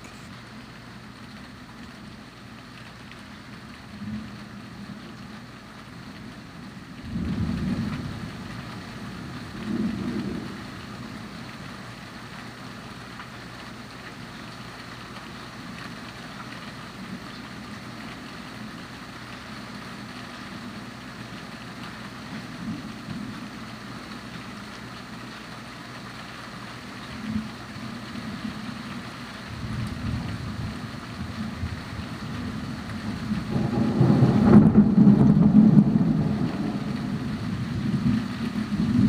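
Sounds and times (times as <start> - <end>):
rain pattering: 0.0 - 39.0
low rumble: 33.5 - 39.0.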